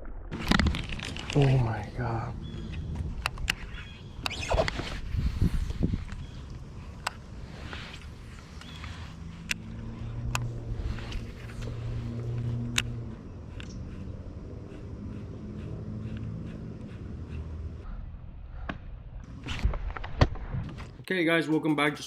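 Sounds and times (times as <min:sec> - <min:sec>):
sharp clicks: 0:02.7 - 0:04.8, 0:12.4 - 0:14.0
motor humming: 0:08.5 - 0:17.8.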